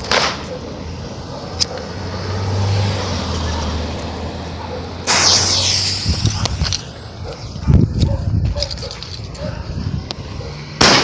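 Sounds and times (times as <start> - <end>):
vehicle engine hum: 0.4 - 10.8
loud rushing noise: 5.1 - 7.6.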